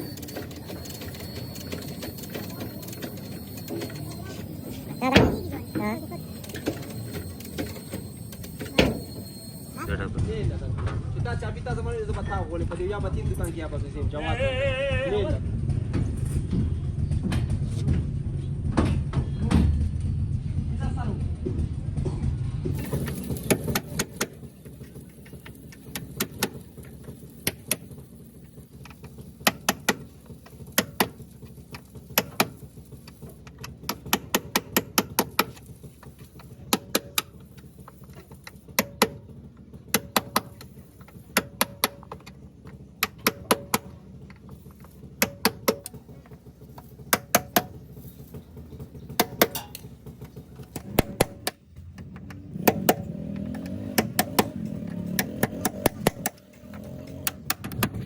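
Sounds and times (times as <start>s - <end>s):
hammer striking metal: 49.1s - 50.0s.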